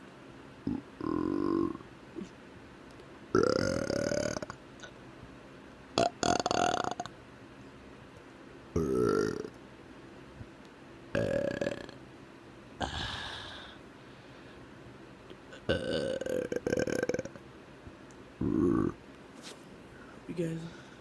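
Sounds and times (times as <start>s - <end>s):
man belching: 0.6s - 1.8s, 3.4s - 4.6s, 6.0s - 7.1s, 8.8s - 9.5s, 11.1s - 12.0s, 15.5s - 17.4s, 18.4s - 19.0s.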